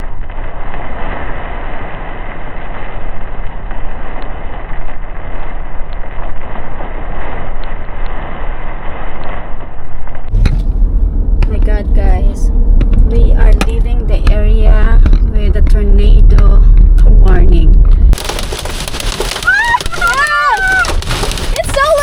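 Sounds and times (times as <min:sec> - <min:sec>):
car driving on road: 0:10.3 - 0:22.0.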